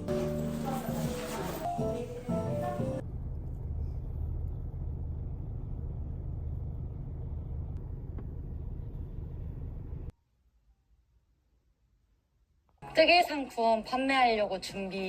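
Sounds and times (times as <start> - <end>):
background music: 0.0 - 3.0, 12.8 - 15.0
steady low rumble: 3.0 - 10.1.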